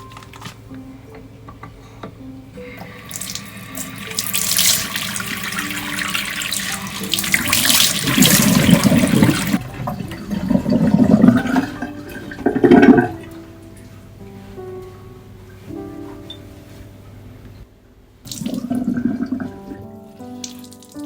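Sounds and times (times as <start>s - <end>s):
water running from tap into sink: 2.8s - 13.2s.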